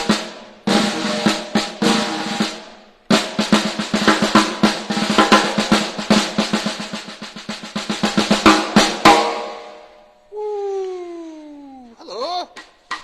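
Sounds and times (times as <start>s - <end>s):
snare drum fast strokes: 0.0s - 9.6s.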